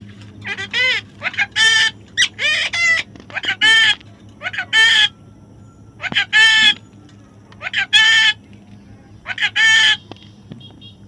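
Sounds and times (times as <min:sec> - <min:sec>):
parrot squawking: 0:00.4 - 0:05.2, 0:06.0 - 0:06.8, 0:07.6 - 0:08.4, 0:09.2 - 0:10.0.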